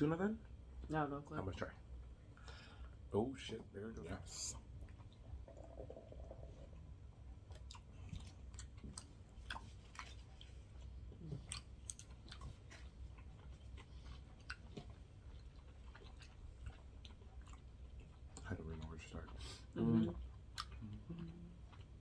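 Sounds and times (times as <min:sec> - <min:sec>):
low steady hum: 0:00.0 - 0:22.0
close-miked chewing: 0:00.3 - 0:22.0
small mouth clicks: 0:20.5 - 0:21.9.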